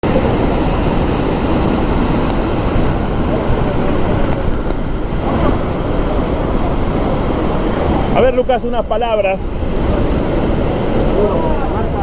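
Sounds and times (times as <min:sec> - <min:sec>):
waterfall roaring: 0:00.0 - 0:12.0.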